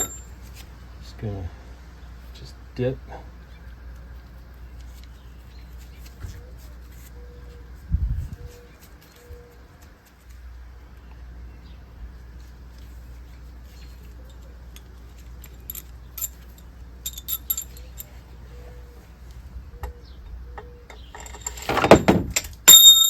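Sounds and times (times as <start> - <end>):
metal bolts and tools clinking: 0.0 - 0.4, 14.0 - 18.2, 20.9 - 23.0.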